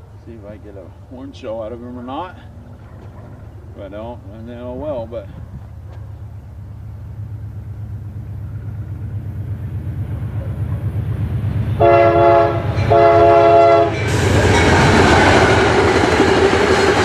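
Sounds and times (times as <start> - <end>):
diesel locomotive engine rumble: 0.0 - 17.0
train passing with wheel noise: 0.0 - 17.0
train horn blasts: 11.7 - 15.8.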